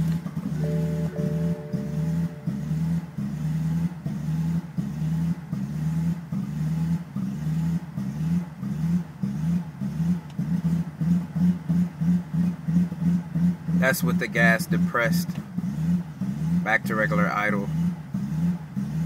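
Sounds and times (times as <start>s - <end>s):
car engine rough idle: 0.0s - 19.0s.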